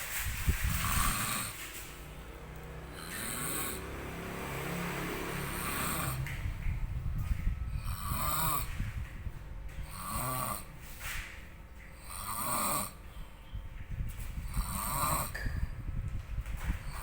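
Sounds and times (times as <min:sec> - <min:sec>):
man snoring loudly: 0:00.7 - 0:01.6, 0:02.9 - 0:06.4, 0:07.8 - 0:08.8, 0:09.8 - 0:10.8, 0:12.0 - 0:13.0, 0:14.4 - 0:15.4.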